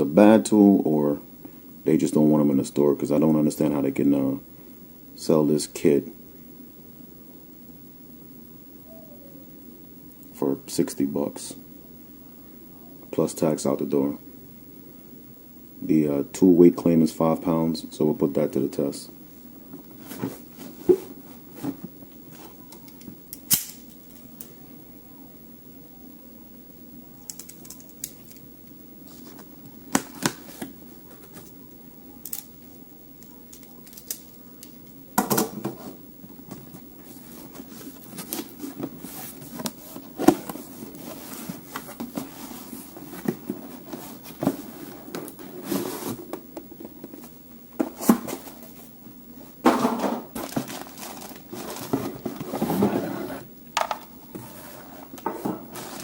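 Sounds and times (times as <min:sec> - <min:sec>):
clicks and knocks of parts: 0:27.2 - 0:28.4, 0:33.5 - 0:34.8
packaging rustling and tearing: 0:50.3 - 0:52.6.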